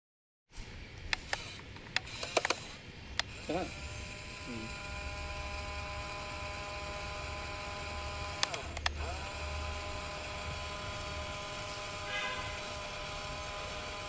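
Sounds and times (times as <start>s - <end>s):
sharp clicks: 1.0s - 3.4s, 8.3s - 9.1s
small electric motor whining: 1.2s - 14.0s.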